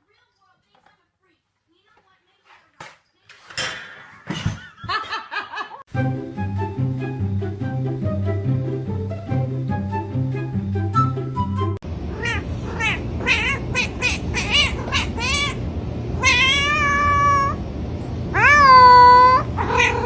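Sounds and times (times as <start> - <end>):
cat meowing: 12.1 - 15.6, 16.2 - 17.6, 18.3 - 20.0.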